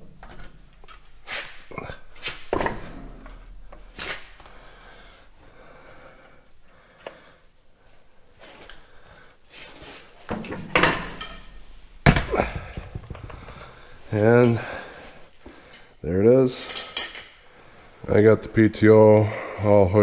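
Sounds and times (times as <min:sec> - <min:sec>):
heavy parts knocking: 0:10.3 - 0:14.1.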